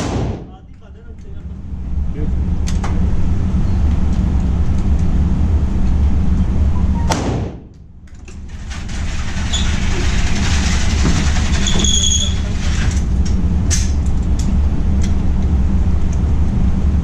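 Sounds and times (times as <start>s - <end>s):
gunshot: 0.0s - 0.5s, 7.1s - 7.7s
low rumble: 0.0s - 9.0s.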